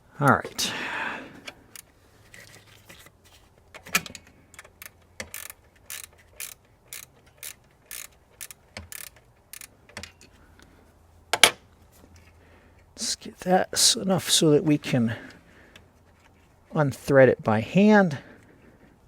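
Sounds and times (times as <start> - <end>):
wrench clicking on nut: 3.8 - 10.3.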